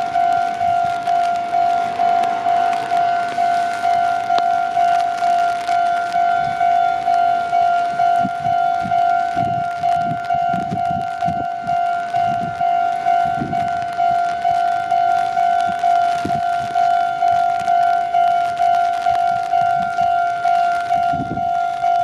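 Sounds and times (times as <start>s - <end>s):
low rumbling: 0.0s - 15.2s
level crossing warning bell ringing: 0.0s - 22.0s.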